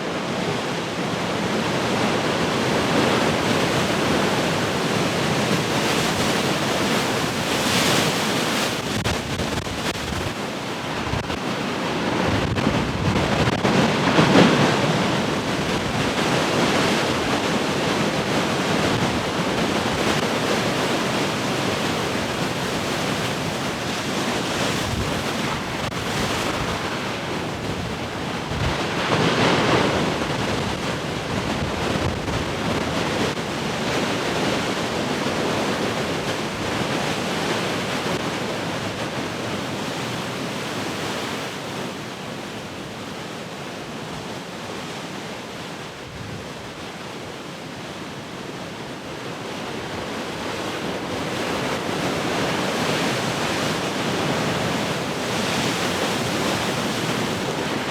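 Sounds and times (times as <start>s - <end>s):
heavy ocean surf: 0.0s - 57.9s
big wave crash: 11.0s - 17.3s.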